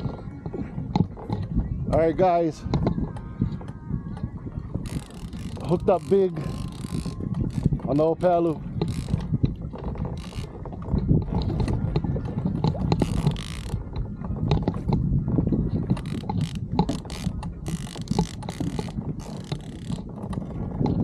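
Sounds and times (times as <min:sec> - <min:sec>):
fishing reel clicking and grinding: 0:04.2 - 0:15.0, 0:15.8 - 0:21.0.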